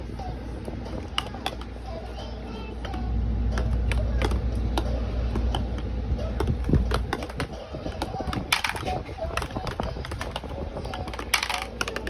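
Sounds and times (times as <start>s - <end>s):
marble rumbling through tubes: 2.9s - 12.0s
marble clicking on cardboard: 6.4s - 12.0s.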